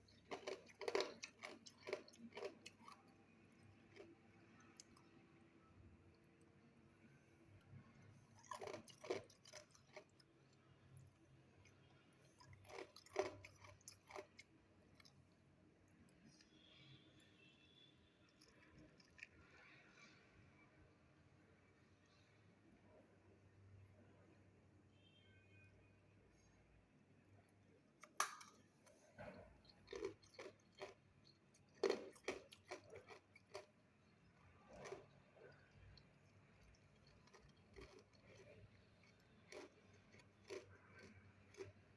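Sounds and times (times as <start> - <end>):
person crunching ice: 0.0 - 3.2, 8.4 - 10.1, 12.5 - 14.4, 29.9 - 33.7, 37.0 - 41.8.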